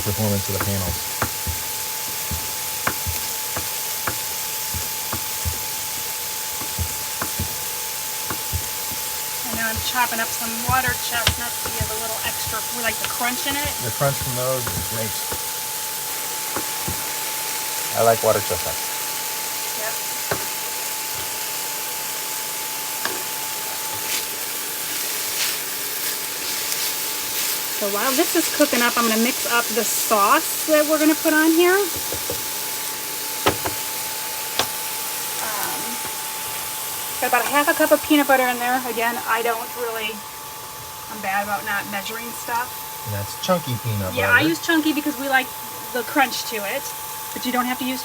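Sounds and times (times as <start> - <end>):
knife chopping on cutting board: 0.0 - 15.6, 16.5 - 17.2, 20.2 - 21.4, 31.9 - 32.5, 33.4 - 33.9
vegetables frying in pan: 0.0 - 48.0.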